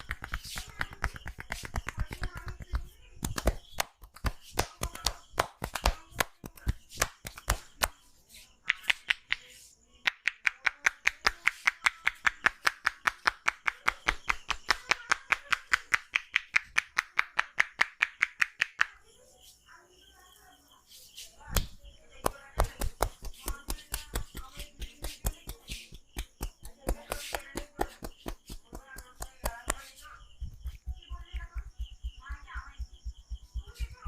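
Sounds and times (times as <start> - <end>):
quick hand claps: 0.0 - 8.0, 21.6 - 30.0
hands slapping a head: 0.0 - 19.0, 21.2 - 32.2.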